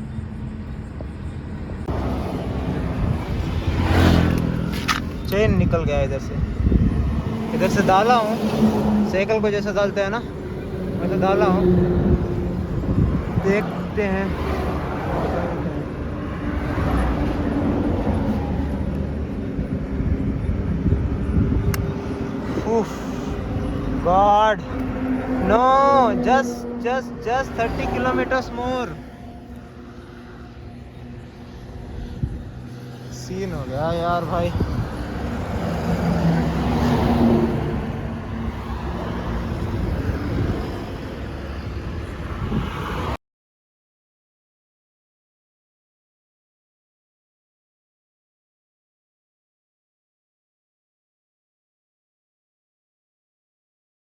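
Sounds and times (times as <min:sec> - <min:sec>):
highway vehicle rumble: 0:00.0 - 0:43.2
road noise: 0:00.0 - 0:43.2.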